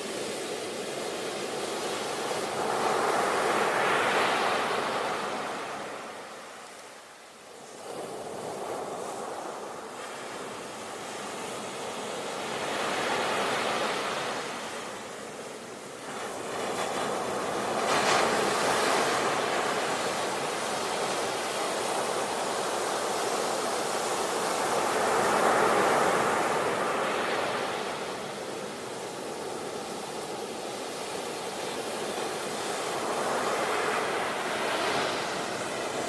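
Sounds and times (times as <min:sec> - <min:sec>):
sea waves breaking: 0:16.1 - 0:36.0.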